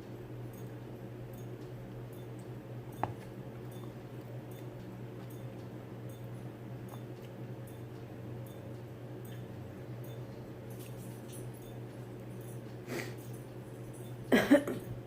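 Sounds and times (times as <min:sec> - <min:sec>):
steady low hum: 0:00.0 - 0:15.0
person chewing food: 0:01.9 - 0:08.1.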